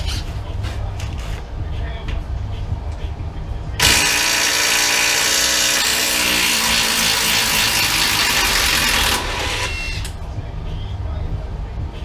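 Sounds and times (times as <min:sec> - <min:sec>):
impact wrench running: 0:03.8 - 0:10.1.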